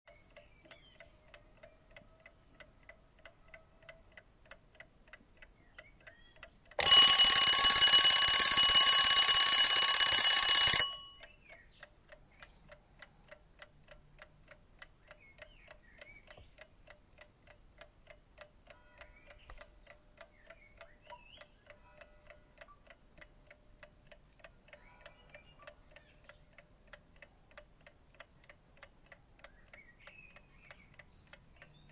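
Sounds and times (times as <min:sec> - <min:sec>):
mechanical clock ticking: 0:00.1 - 0:31.9
alarm bell ringing: 0:06.8 - 0:11.2.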